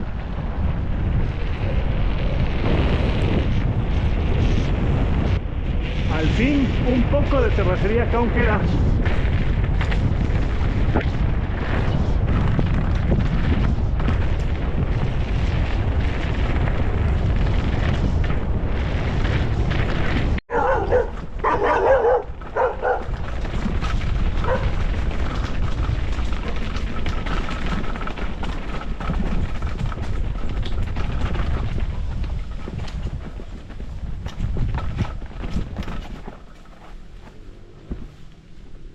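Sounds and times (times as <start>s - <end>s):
motorcycle engine rumbling: 0.0s - 38.9s
knocks from rough ground: 6.4s - 38.4s
dog barking: 20.5s - 23.1s, 24.4s - 24.7s.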